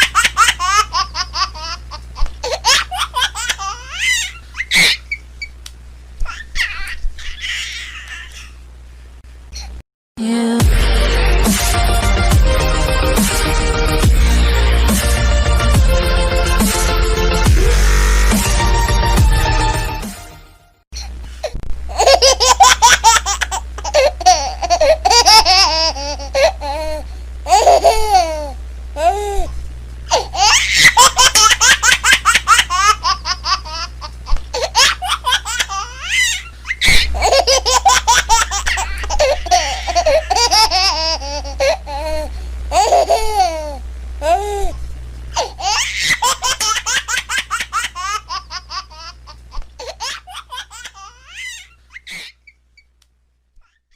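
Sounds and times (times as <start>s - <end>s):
baby laughing: 0.0s - 5.5s, 6.2s - 8.6s, 21.9s - 29.5s, 30.1s - 44.7s, 45.4s - 52.6s
low hum: 32.5s - 46.8s.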